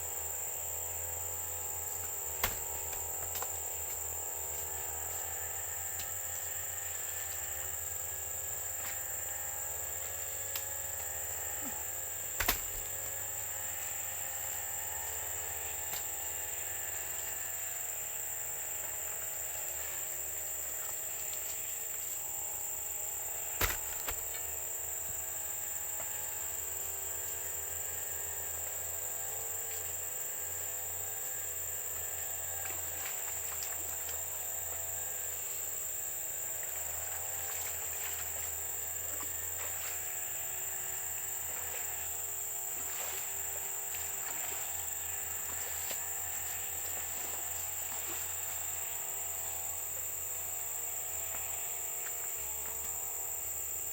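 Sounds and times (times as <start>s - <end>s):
crickets chirping: 0.0s - 53.9s
faint wavering hum: 0.0s - 53.9s
sharp knocks: 12.4s - 13.0s, 23.6s - 24.2s.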